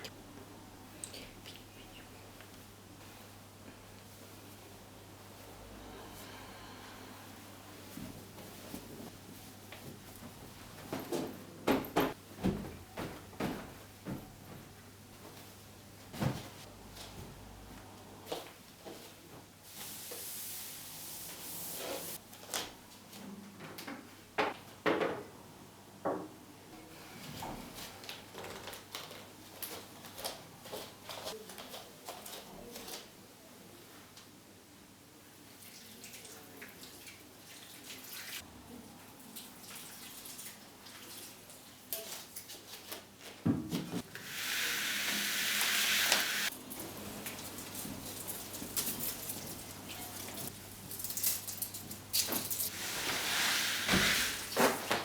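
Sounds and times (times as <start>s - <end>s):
objects knocking and clunking: 10.8s - 14.6s
steady hiss: 44.0s - 49.0s, 52.6s - 55.0s
kitchen tap running: 44.1s - 46.5s.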